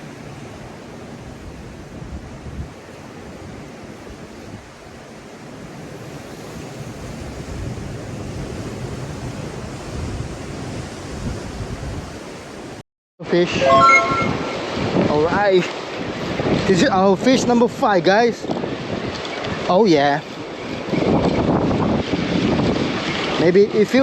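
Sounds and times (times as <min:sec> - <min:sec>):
wind buffeting microphone: 0:20.5 - 0:23.3.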